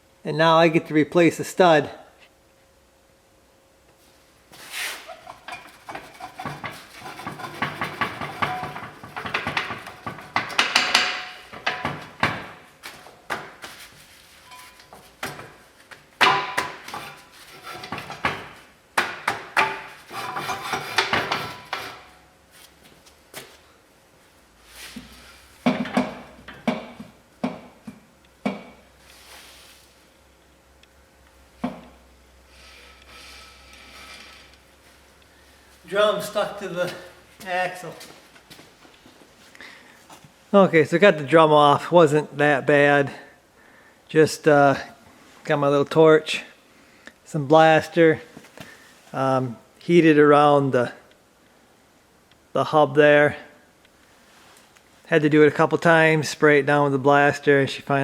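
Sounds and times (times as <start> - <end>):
hand tools clanking on metal: 5.1 - 12.6, 16.2 - 22.2.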